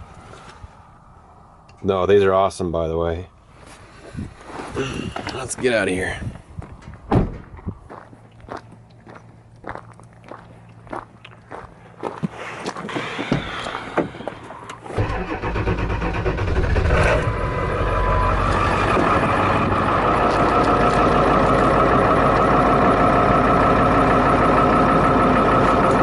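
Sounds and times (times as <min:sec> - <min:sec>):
vehicle engine starting and idling: 0:12.8 - 0:26.0.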